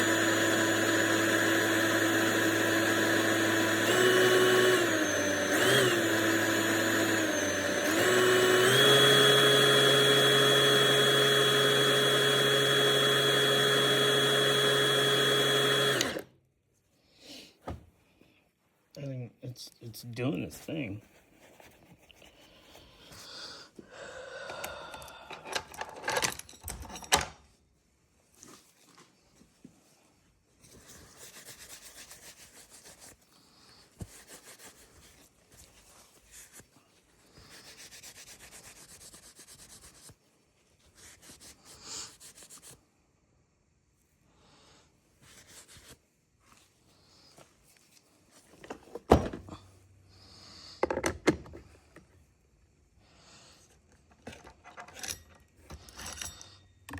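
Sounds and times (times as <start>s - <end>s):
rubbing and scraping on chainsaw: 0.0s - 16.2s.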